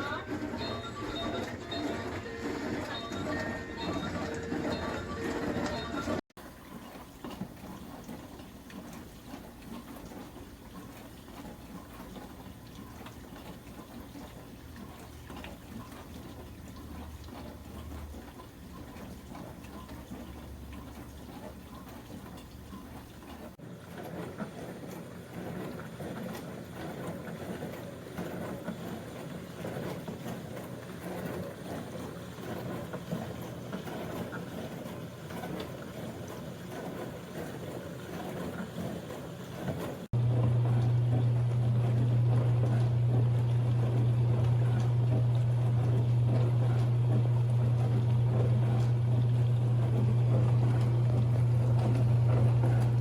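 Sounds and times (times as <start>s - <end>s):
water spraying in dishwasher: 0.0s - 53.0s
low motor hum: 39.5s - 53.0s.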